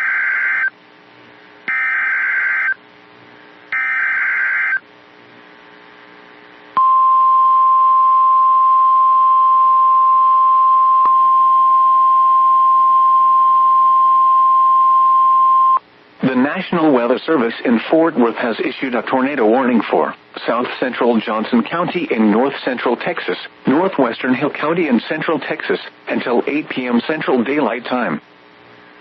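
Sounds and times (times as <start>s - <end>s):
steady high warning alarm tone: 0.0s - 0.7s, 1.7s - 2.8s, 3.7s - 4.8s.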